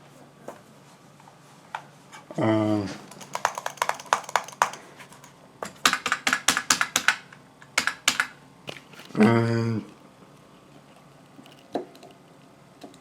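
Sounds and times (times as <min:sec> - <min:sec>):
computer keyboard typing: 0:03.0 - 0:08.4.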